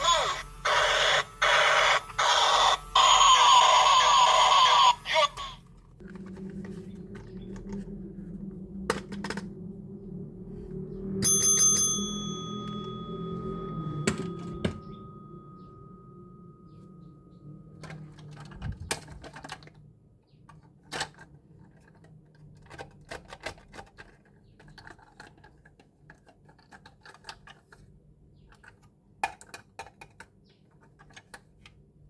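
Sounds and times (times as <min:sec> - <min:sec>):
toy electronic siren: 0:00.0 - 0:05.7, 0:06.4 - 0:15.8
bell-like ding: 0:11.2 - 0:18.0.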